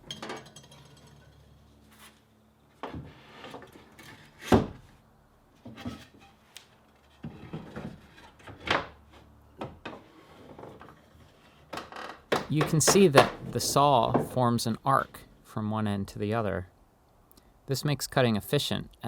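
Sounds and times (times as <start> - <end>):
wooden knocks and clunks: 9.6 - 11.0, 11.7 - 14.4.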